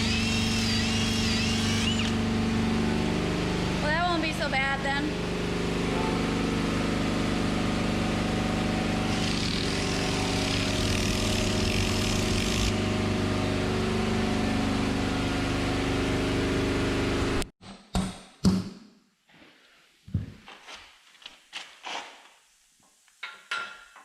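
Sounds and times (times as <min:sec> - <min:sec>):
engine running: 0:00.0 - 0:17.5.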